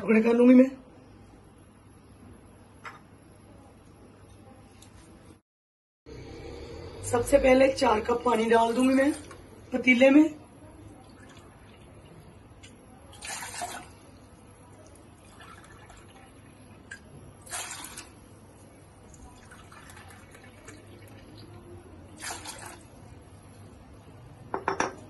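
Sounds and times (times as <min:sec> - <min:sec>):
water pouring into a pot: 0:10.8 - 0:18.3, 0:19.0 - 0:23.1.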